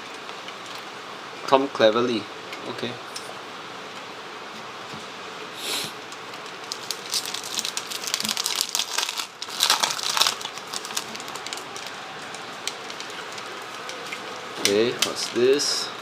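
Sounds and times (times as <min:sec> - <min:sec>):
foil wrapper crinkling and rustling: 0:06.4 - 0:15.8.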